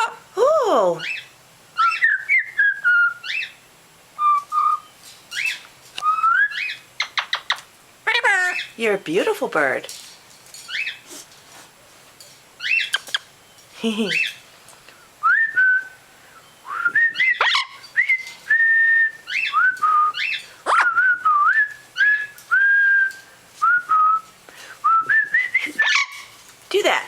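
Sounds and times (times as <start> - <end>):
whistled tune: 4.2 - 4.9, 6.0 - 6.6, 15.2 - 16.0, 16.6 - 26.0.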